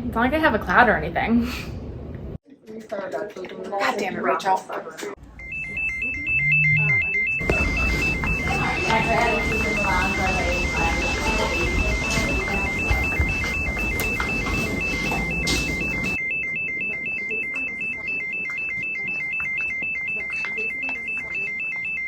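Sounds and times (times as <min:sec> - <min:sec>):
noisy background: 0:02.6 - 0:22.0
electronic alarm beeping: 0:05.2 - 0:22.0.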